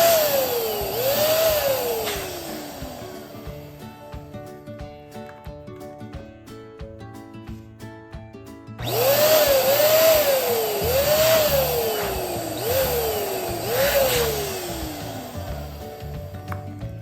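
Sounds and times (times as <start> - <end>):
electric balloon pump whistling: 0.0 - 3.4, 8.8 - 16.3
background music: 0.0 - 17.0.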